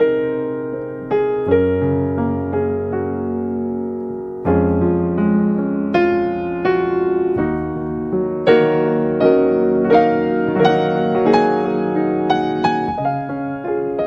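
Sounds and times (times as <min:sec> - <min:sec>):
gentle piano melody: 0:00.0 - 0:14.0.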